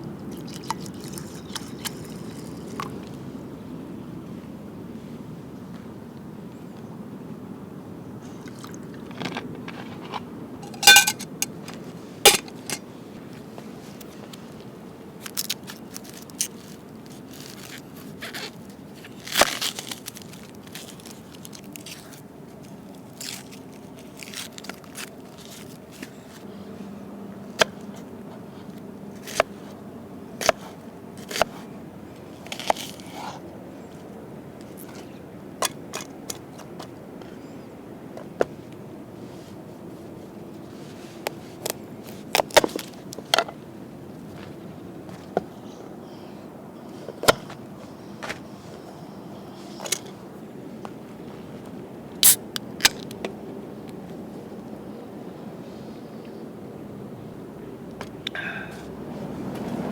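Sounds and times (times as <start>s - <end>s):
metal cookware clinking and scraping: 10.6s - 11.5s, 12.3s - 12.8s.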